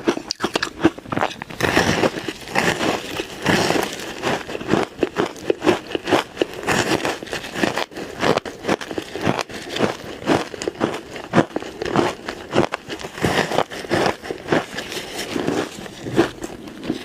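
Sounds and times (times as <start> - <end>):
ice crunching in mouth: 0.0 - 17.0.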